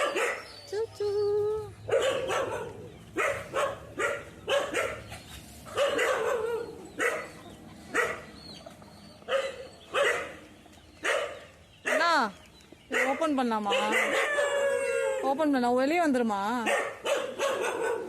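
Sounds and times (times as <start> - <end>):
dog barking: 0.0 - 0.5, 1.9 - 5.1, 5.7 - 8.3, 9.3 - 10.4, 11.0 - 12.2, 12.9 - 14.7, 16.6 - 18.0.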